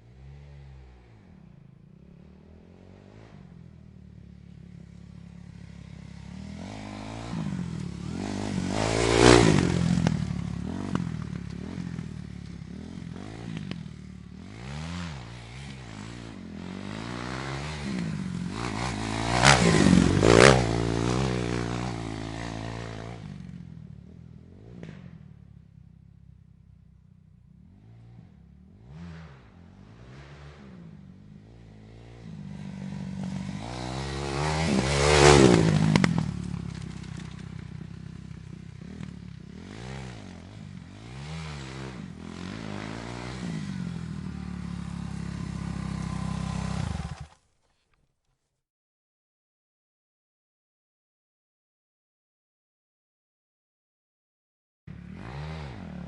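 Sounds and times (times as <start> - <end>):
dirt bikes revving past: 0.0 - 23.8, 27.7 - 47.4, 54.9 - 56.0.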